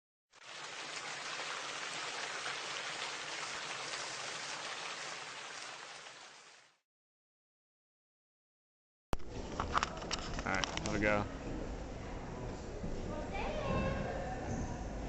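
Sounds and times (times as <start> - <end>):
rain patter: 0.4 - 6.8.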